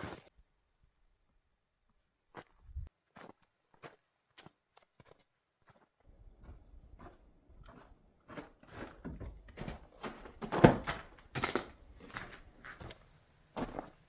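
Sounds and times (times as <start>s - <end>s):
footsteps crunching in snow: 12.0s - 14.0s.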